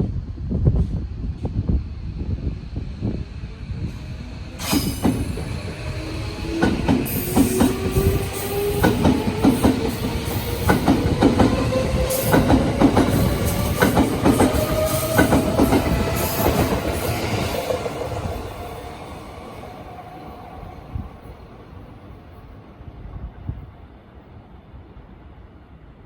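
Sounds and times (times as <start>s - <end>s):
train motor whine: 3.4s - 19.4s
train wheels clacking over rail joints: 4.6s - 17.2s.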